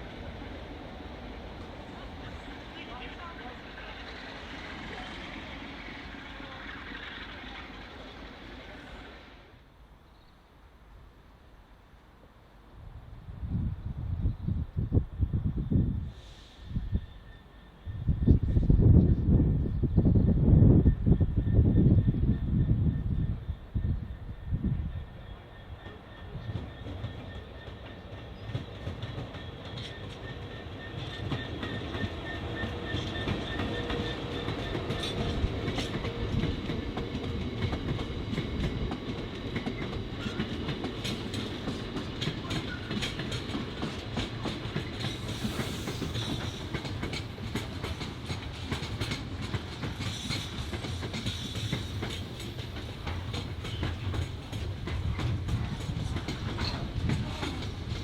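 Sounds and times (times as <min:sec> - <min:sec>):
train rumble: 0:00.0 - 0:09.6, 0:12.6 - 0:58.0
high tones from train wheels: 0:00.0 - 0:10.3, 0:15.6 - 0:58.0
train wheels clacking over rail joints: 0:25.8 - 0:58.0.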